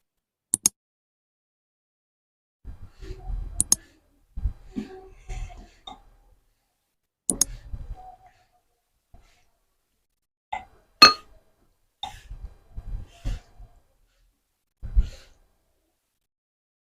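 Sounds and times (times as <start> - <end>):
sharp clink with ring: 11.0 - 11.3.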